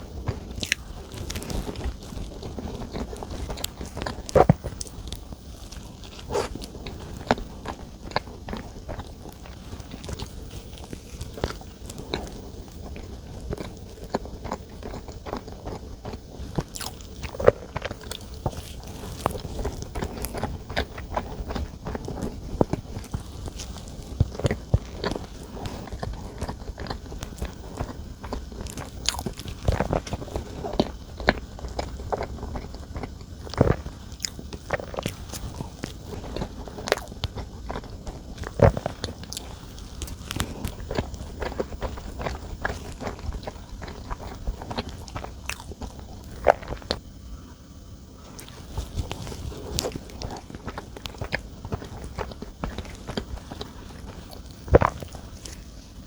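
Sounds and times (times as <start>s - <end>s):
biting and chewing: 0.0s - 47.1s, 48.2s - 56.0s.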